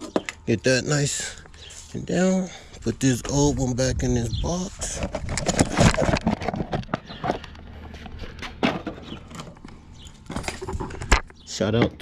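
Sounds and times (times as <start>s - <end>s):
handling clicks knocks and rustling: 4.8s - 12.0s.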